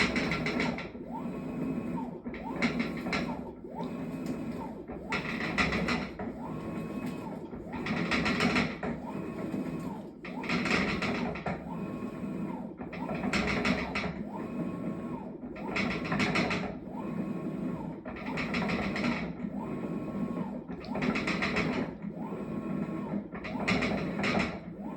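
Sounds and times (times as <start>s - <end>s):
washing machine motor whine: 0.0s - 24.9s
washing machine clanking rattle: 7.5s - 9.1s.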